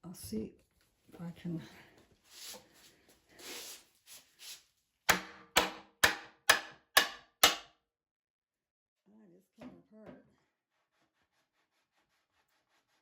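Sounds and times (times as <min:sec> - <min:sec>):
hammer striking wood: 0:05.1 - 0:07.7.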